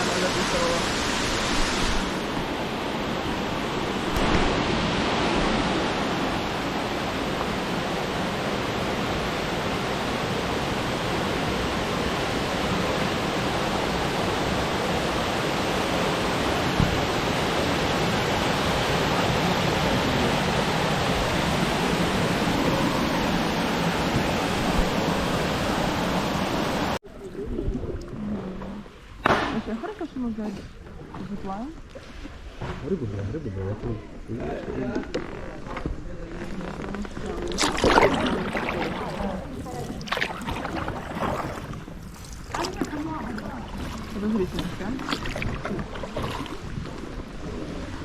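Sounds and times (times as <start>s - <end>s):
waterfall rushing: 0.0s - 27.0s.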